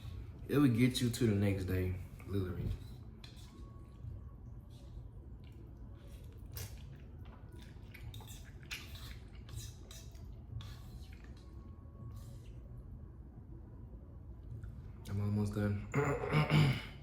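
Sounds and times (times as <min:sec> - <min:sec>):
wet chewing and slurping noodles: 0:02.8 - 0:12.9.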